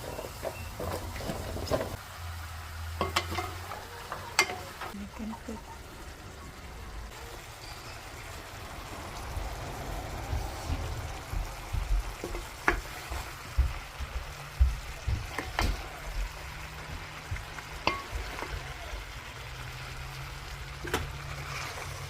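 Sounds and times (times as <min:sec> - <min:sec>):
stir fry sizzling in a pan: 0:00.0 - 0:22.0
utensil clinking against pan: 0:03.0 - 0:04.8, 0:17.8 - 0:18.6.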